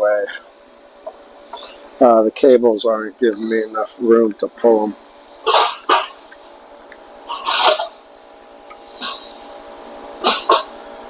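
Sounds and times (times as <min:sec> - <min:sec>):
faint steady hum: 0:00.0 - 0:11.0
metal parts scraping and rattling: 0:07.3 - 0:07.9.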